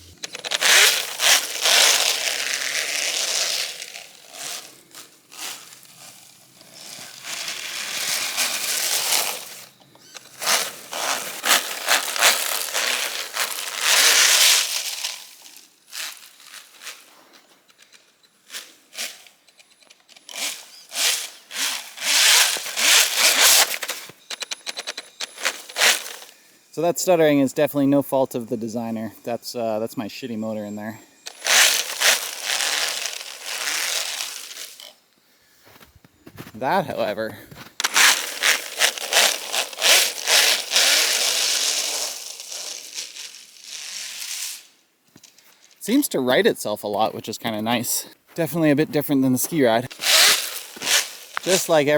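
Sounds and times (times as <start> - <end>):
rc snowmobile motor stuttering: 0.0 - 4.7, 6.6 - 14.8, 31.3 - 34.9, 37.8 - 43.2, 49.8 - 51.9.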